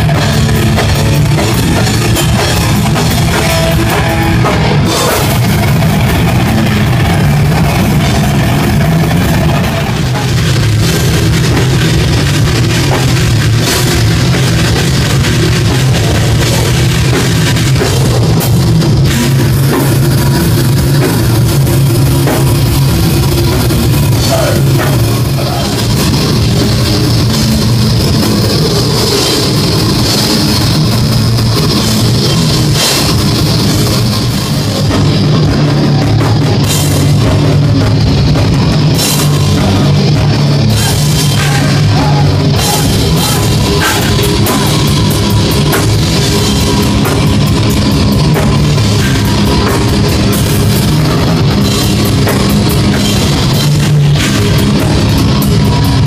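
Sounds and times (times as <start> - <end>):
heavy metal band playing live: 0.0 - 56.0.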